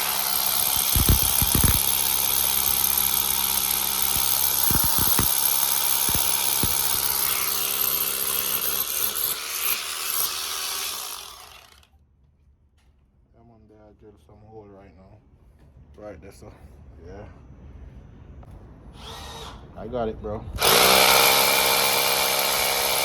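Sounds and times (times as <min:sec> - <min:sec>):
electric drill boring into wall: 0:00.0 - 0:11.9, 0:19.0 - 0:19.6, 0:20.6 - 0:23.0.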